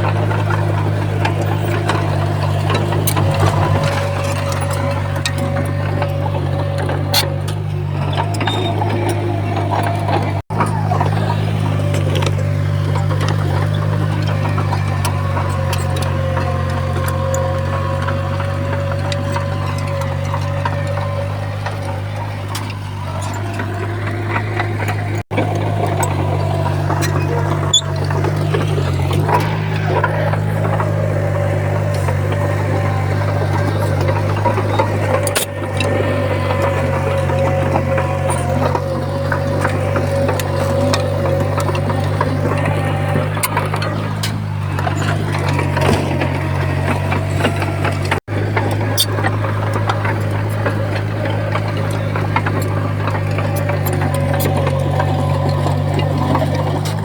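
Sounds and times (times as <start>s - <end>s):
diesel engine running: 0.0s - 57.0s
high engine whine: 0.0s - 57.0s.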